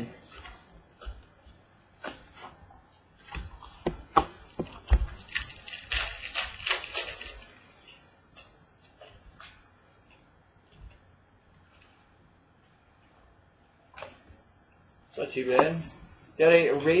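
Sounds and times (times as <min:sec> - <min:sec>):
wrapper crinkling: 0:05.0 - 0:08.0.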